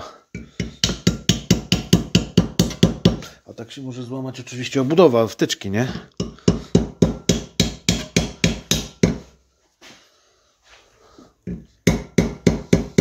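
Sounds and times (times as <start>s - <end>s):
hammer tapping on metal: 0.3s - 3.2s, 6.2s - 9.3s, 11.5s - 13.0s.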